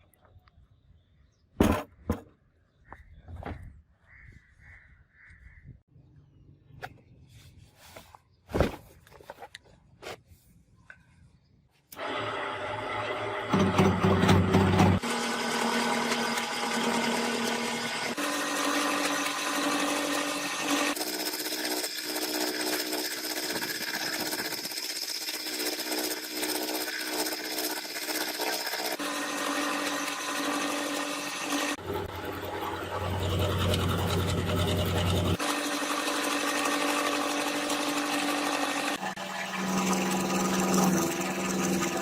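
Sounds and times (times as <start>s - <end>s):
power tools machining steel: 12.0s - 42.0s.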